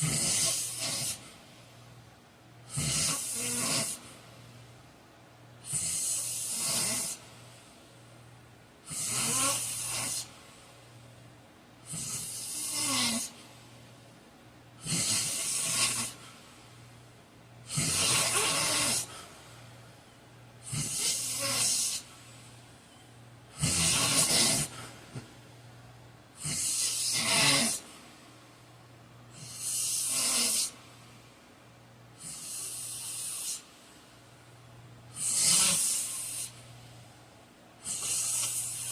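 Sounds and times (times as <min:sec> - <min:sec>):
man snoring heavily: 0:00.0 - 0:01.2, 0:02.7 - 0:04.1, 0:05.6 - 0:07.2, 0:08.8 - 0:10.3, 0:11.8 - 0:13.4, 0:14.8 - 0:16.2, 0:17.6 - 0:19.2, 0:20.6 - 0:22.1, 0:23.6 - 0:24.8, 0:26.4 - 0:27.9, 0:29.4 - 0:30.8, 0:35.2 - 0:36.5, 0:37.8 - 0:38.9
quiet breathing: 0:00.0 - 0:38.9
steady low hum: 0:00.0 - 0:38.9.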